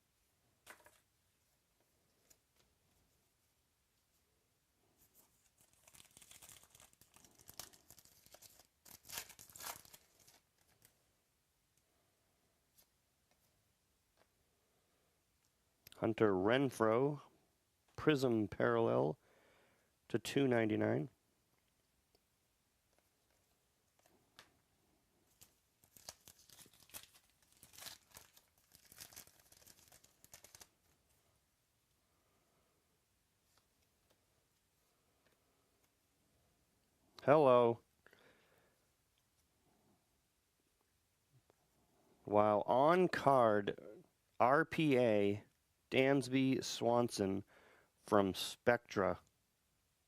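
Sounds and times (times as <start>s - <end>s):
card pack wrapper tearing and crinkling: 5.5s - 10.9s, 25.3s - 31.0s.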